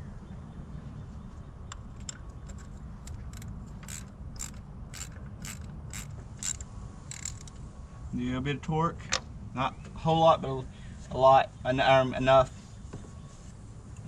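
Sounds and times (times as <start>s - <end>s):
socket ratchet clicking: 1.7s - 7.6s.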